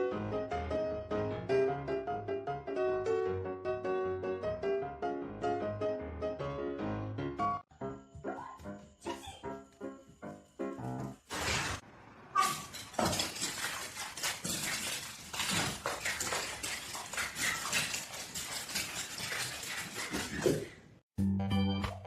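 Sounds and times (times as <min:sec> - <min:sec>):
hard objects clattering and clinking: 0:12.4 - 0:20.8.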